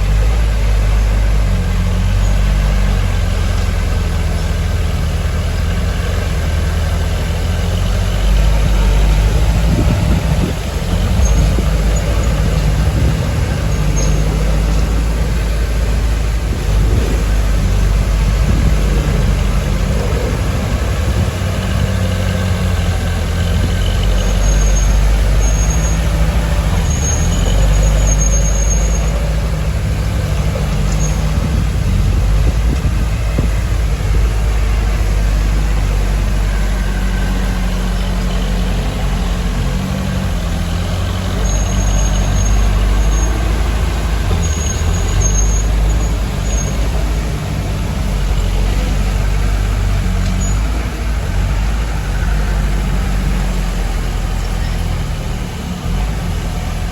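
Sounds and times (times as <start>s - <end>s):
heavy diesel engines running: 0.0s - 56.9s
short high-pitched squeals: 11.1s - 15.4s, 23.7s - 29.6s, 41.3s - 47.0s.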